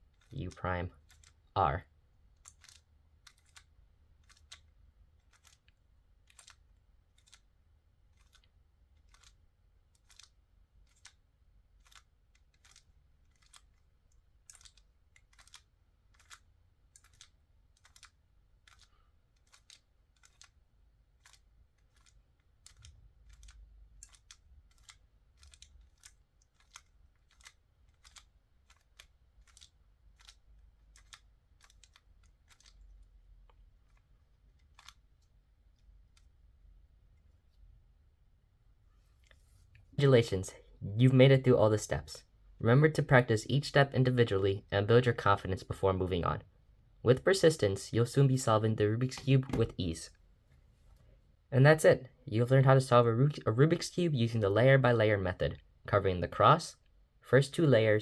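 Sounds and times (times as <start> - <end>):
puzzle cube clicking: 0.0 - 36.5, 47.1 - 50.1.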